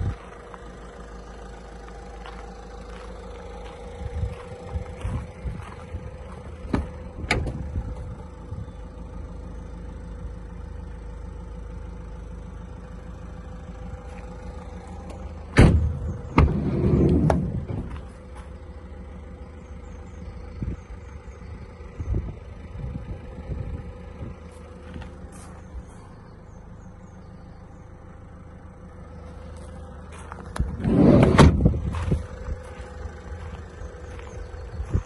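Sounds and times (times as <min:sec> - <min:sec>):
steady low hum: 0:00.0 - 0:35.0
van door clicks: 0:06.7 - 0:07.6
van door slamming: 0:06.7 - 0:07.8, 0:15.5 - 0:17.9, 0:30.8 - 0:31.8.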